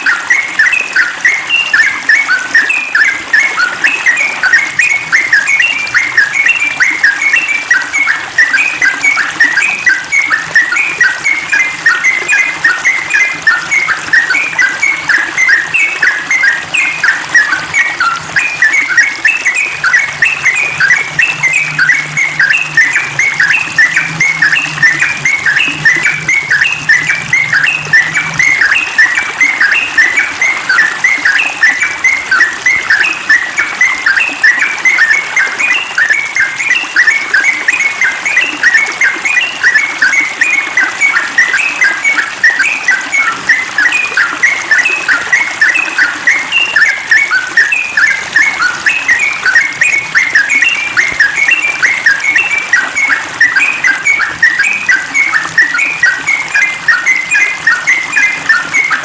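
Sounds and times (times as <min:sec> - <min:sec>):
bulbul singing rapidly: 0:00.0 - 0:59.0.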